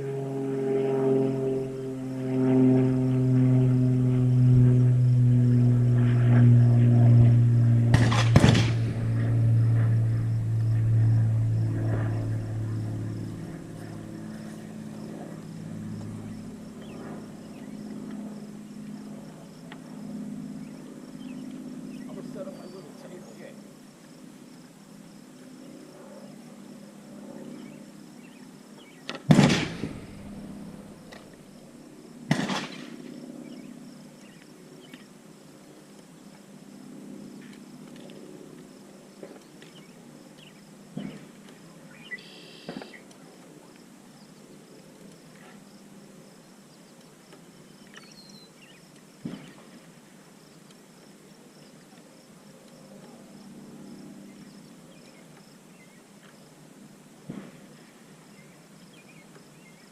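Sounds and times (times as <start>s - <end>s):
gunshots: 7.9s - 9.2s, 29.3s - 30.3s, 32.3s - 33.0s
crickets chirring: 8.8s - 32.3s, 32.9s - 59.9s.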